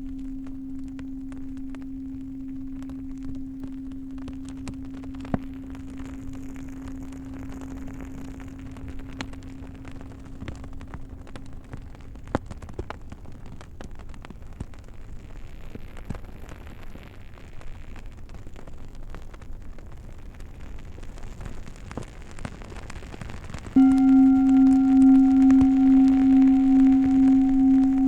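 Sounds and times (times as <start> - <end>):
singing bowl ringing: 0.0 - 10.4, 23.8 - 28.0
campfire crackling and popping: 0.2 - 26.5.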